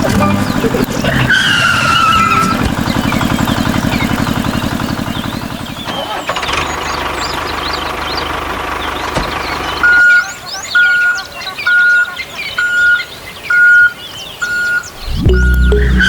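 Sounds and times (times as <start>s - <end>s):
birds chirping: 0.0s - 16.0s
reversing alarm beeps: 9.8s - 10.2s, 10.8s - 16.0s
music: 15.1s - 16.0s.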